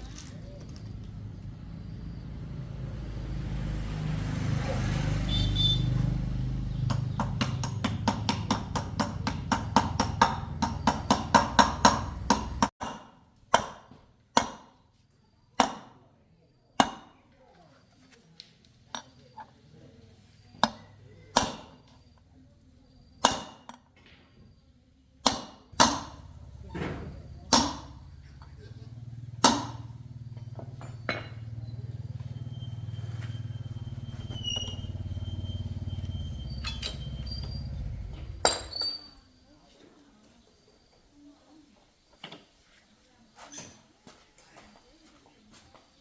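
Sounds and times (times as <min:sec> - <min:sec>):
motorcycle engine running: 0:00.0 - 0:12.7, 0:26.1 - 0:38.6
sharp ringing knocks: 0:06.9 - 0:14.7, 0:29.4 - 0:31.6.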